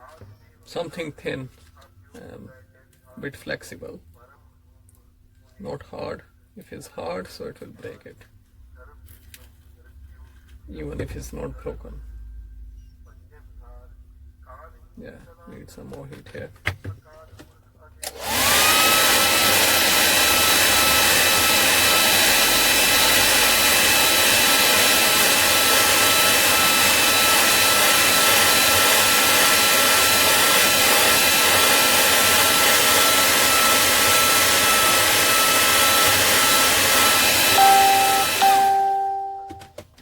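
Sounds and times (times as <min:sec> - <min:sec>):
hot-air blower rushing and whining: 0:18.0 - 0:39.5
two-tone beep: 0:37.6 - 0:39.6.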